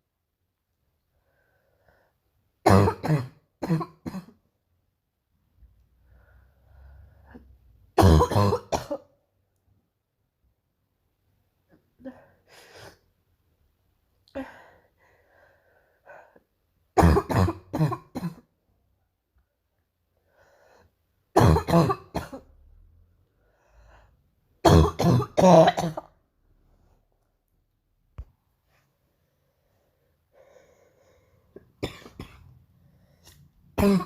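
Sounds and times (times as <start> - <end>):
girl coughing harshly: 2.7 - 4.4, 8.0 - 9.1, 17.0 - 18.5, 21.4 - 22.5, 24.6 - 26.1, 31.8 - 32.5, 33.8 - 34.0.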